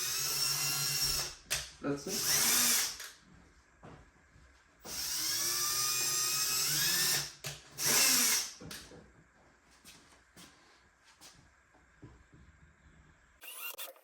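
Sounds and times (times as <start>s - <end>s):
power drill drilling: 0.0s - 1.3s, 2.1s - 3.1s, 4.8s - 8.6s, 13.4s - 14.0s.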